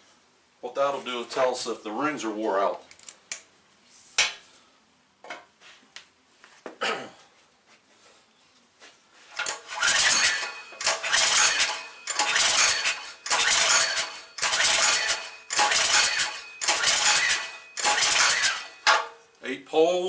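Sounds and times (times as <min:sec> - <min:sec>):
engine cranked by recoil starter: 0:09.4 - 0:19.1.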